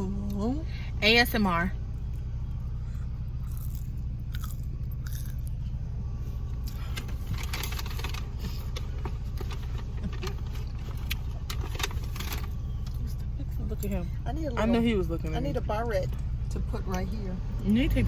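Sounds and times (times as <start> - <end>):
car cabin hum: 0.0 - 17.8
handling clicks and rustling: 6.9 - 12.6.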